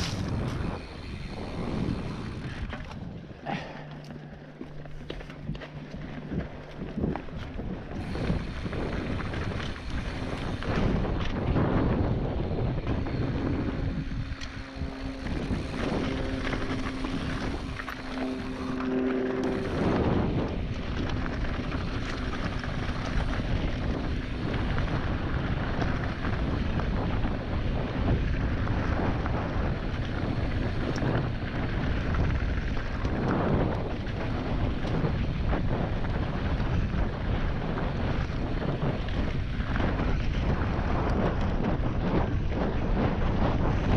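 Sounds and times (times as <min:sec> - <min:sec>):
bike tyres and frame rattling: 0:00.0 - 0:43.9
wind rushing over microphone: 0:00.0 - 0:43.9
steady low tones: 0:12.3 - 0:21.9.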